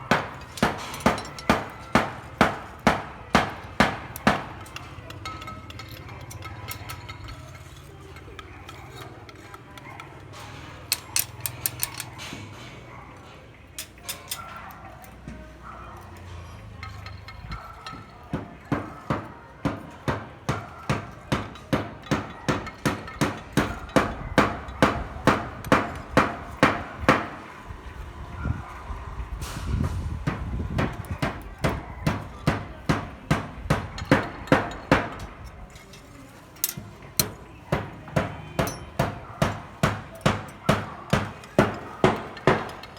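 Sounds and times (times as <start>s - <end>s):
hammer striking steel: 0.0s - 7.3s, 17.6s - 27.4s, 30.2s - 35.5s, 36.6s - 42.9s.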